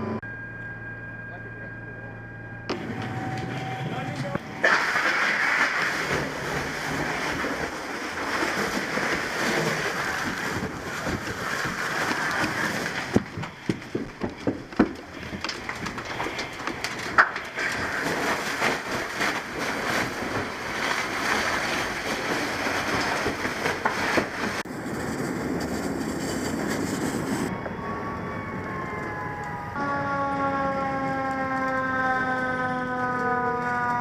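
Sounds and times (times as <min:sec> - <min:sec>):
siren winding down: 0:00.0 - 0:04.6, 0:27.5 - 0:34.0
knocks and bangs: 0:06.0 - 0:24.6.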